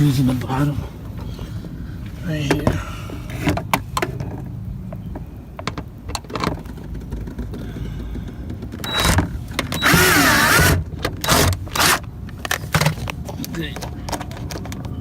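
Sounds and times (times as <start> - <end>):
small electric motor whirring: 9.8 - 12.0.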